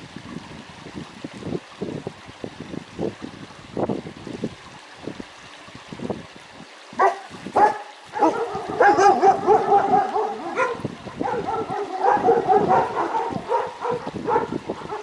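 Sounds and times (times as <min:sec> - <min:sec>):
dog yelping: 0:07.0 - 0:15.0.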